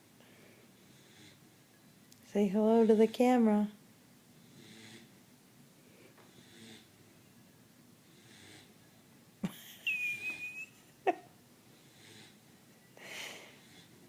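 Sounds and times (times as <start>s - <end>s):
pet snoring softly: 0.8s - 1.5s, 4.4s - 5.2s, 6.2s - 7.0s, 8.0s - 8.8s, 11.8s - 12.4s.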